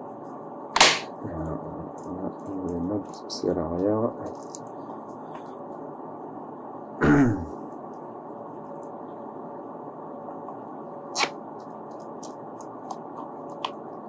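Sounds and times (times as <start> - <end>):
background hiss: 0.0 - 14.0
person clearing throat: 7.0 - 7.6.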